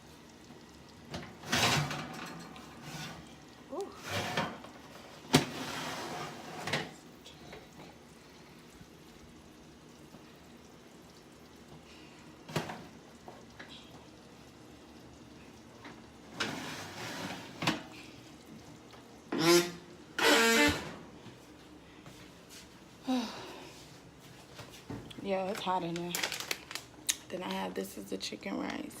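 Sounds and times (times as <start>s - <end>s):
kitchen rustling clatter: 1.2s - 7.0s, 24.4s - 26.9s.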